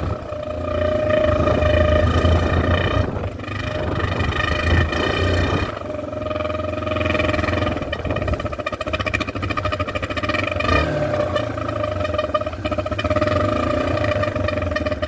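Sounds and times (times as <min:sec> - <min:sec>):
air horn blaring: 0:00.0 - 0:03.8
dirt bike engine rumble: 0:00.0 - 0:15.0.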